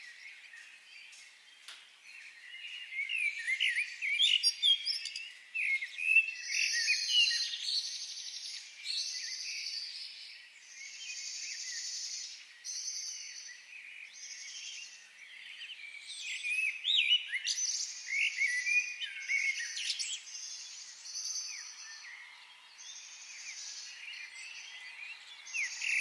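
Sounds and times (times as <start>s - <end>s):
forest birds singing: 0.0s - 26.0s.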